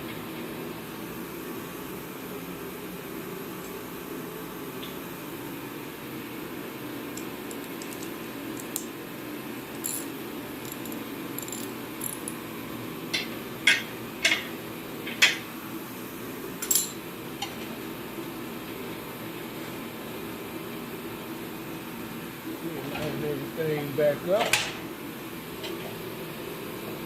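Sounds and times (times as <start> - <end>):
steady low hum: 0.0 - 25.6
metal tools clinking: 9.8 - 12.4, 16.6 - 17.0.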